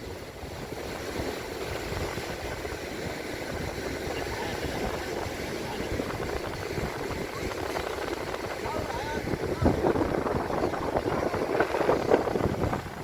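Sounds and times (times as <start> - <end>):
wind rumbling on microphone: 0.0 - 13.0
faint voices: 4.0 - 12.8.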